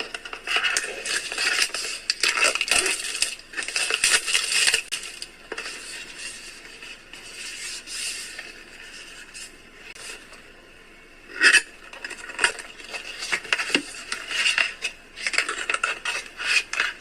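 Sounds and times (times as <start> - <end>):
packaging crinkling: 0.2 - 6.4.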